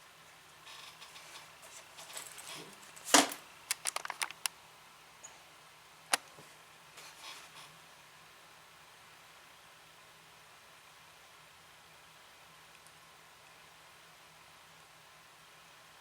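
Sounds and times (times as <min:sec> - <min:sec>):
small hard objects clicking: 0:03.7 - 0:04.5.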